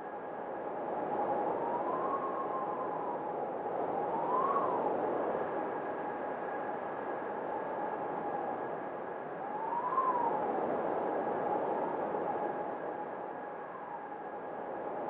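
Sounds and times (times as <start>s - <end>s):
wind howling and whistling: 0.7s - 5.3s, 9.4s - 15.0s.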